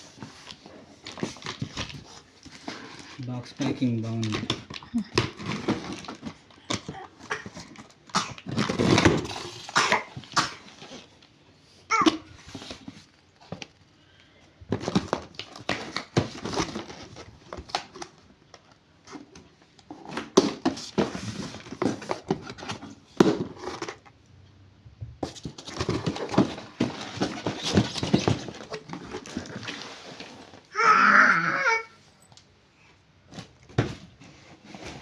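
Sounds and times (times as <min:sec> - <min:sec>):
packaging rustling and crinkling: 0:00.0 - 0:11.4, 0:14.7 - 0:24.2, 0:25.2 - 0:30.7.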